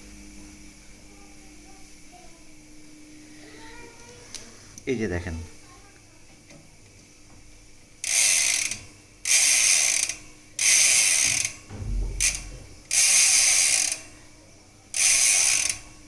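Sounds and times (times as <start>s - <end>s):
bicycle hub freewheeling buzz: 7.9s - 14.2s, 14.9s - 16.0s.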